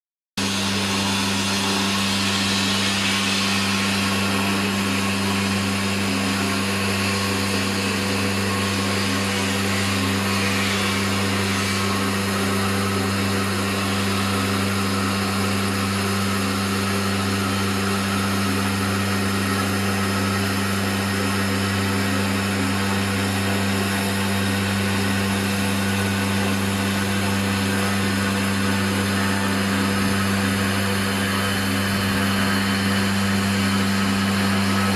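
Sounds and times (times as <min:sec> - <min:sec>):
hiss: 0:00.4 - 0:06.4, 0:08.8 - 0:12.6
router low hum: 0:00.4 - 0:34.9.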